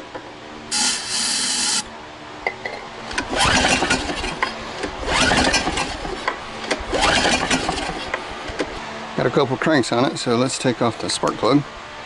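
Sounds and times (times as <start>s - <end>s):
generator recoil cord pull crank: 0.7s - 1.9s, 3.1s - 8.1s.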